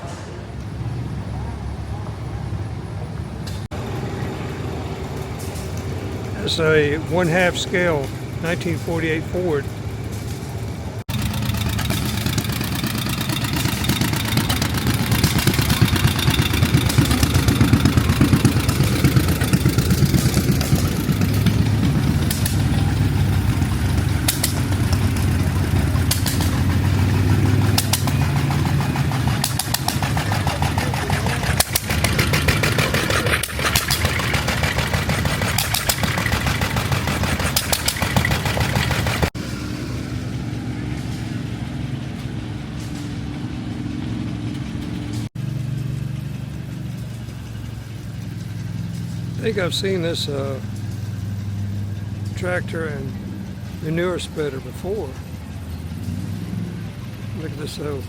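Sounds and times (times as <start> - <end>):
engine running: 0.0 - 58.0.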